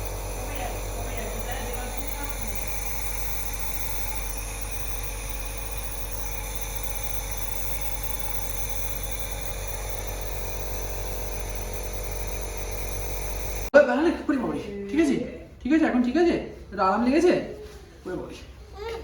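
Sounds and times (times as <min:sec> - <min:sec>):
nebulizer motor hum: 0:00.0 - 0:13.7.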